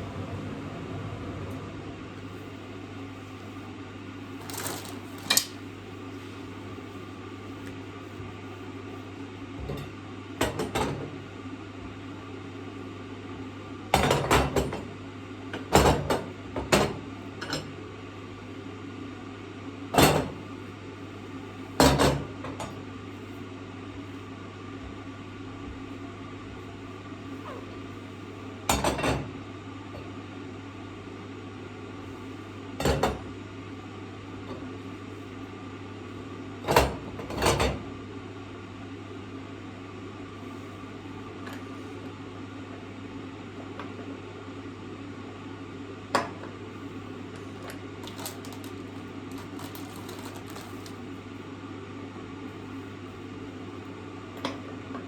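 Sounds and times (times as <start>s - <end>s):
steady low hum: 0.0s - 10.4s.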